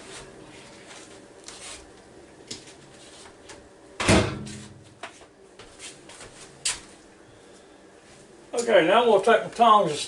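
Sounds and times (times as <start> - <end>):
microwave door shutting: 4.0 - 4.6.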